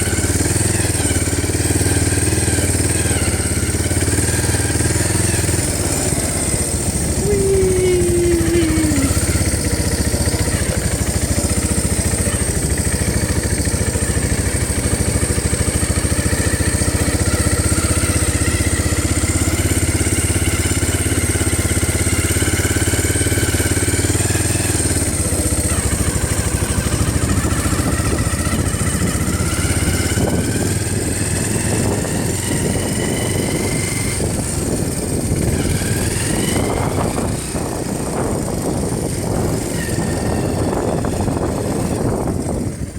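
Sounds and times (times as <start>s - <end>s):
atv engine running: 0.0s - 42.9s
high whine: 5.6s - 10.4s.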